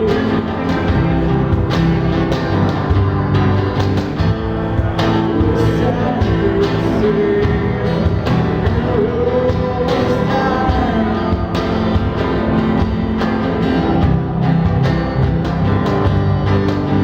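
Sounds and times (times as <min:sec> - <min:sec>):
acoustic guitars: 0:00.0 - 0:17.0
cajon beats: 0:00.0 - 0:17.0
person singing: 0:05.0 - 0:12.2.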